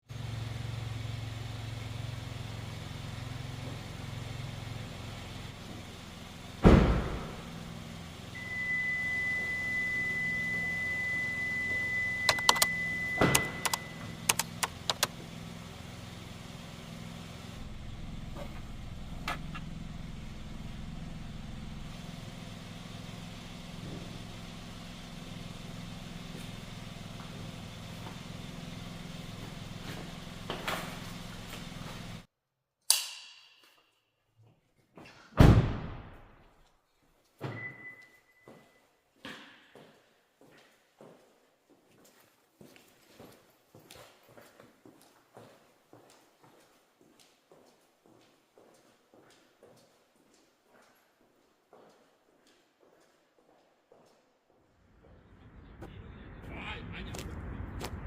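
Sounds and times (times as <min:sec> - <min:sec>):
car engine running: 0:00.1 - 0:08.4, 0:11.4 - 0:32.3
car door shutting: 0:06.6 - 0:07.4, 0:12.3 - 0:15.1
steady high beep: 0:08.4 - 0:14.4
sharp clicks: 0:12.3 - 0:15.1.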